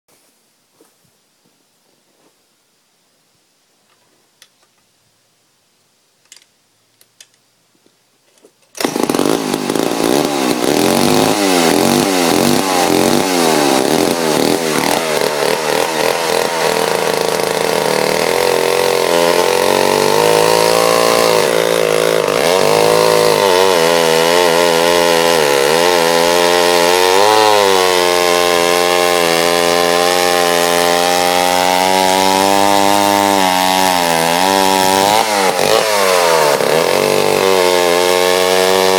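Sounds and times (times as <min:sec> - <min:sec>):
chainsaw cutting wood: 0:08.6 - 0:38.9.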